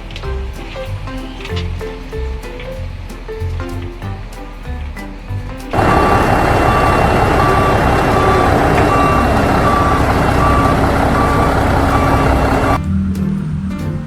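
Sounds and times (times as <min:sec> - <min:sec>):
loud engine rumble: 0:05.7 - 0:14.0
truck reversing alarm beeping: 0:05.8 - 0:12.8.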